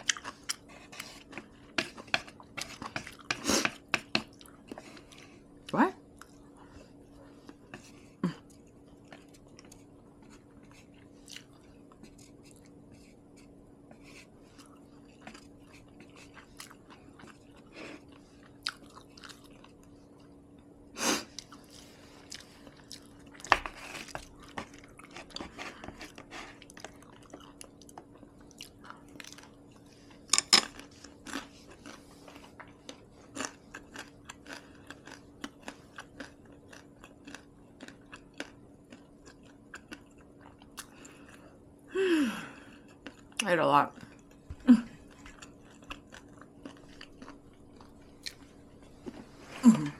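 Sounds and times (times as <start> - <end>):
close chewing and crunching: 0.0 - 41.6, 42.5 - 49.9
faint steady hum: 0.0 - 49.9.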